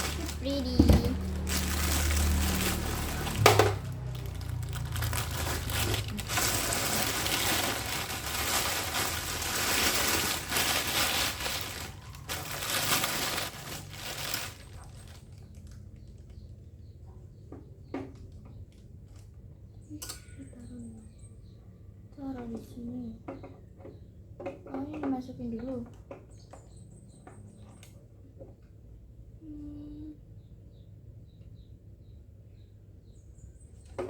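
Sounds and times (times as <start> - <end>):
plastic packaging crinkling: 0.0 - 16.3.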